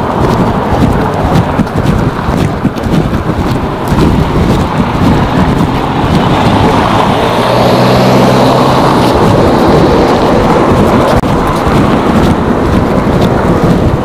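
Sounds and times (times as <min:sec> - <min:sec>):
wind rumbling on microphone: 0:00.0 - 0:14.0
car passing by: 0:03.5 - 0:14.0.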